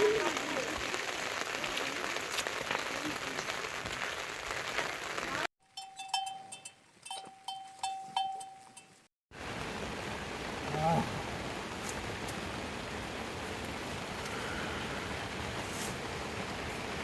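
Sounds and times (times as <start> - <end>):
rain hissing: 0.0 - 5.5, 9.3 - 17.0.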